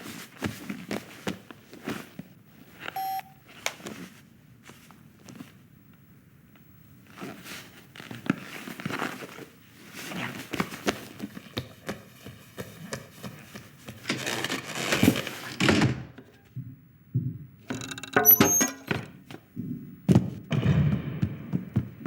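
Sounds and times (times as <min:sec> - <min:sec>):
foley knocks and thumps: 0:15.7 - 0:22.0.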